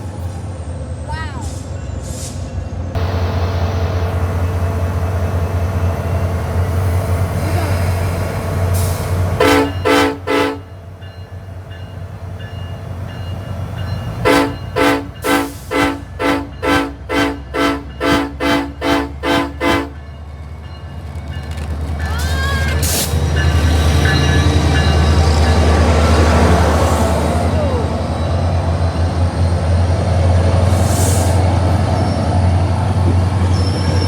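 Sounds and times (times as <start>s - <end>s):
train rumbling: 0.0s - 34.0s
train horn toots: 7.3s - 10.8s, 14.2s - 20.1s.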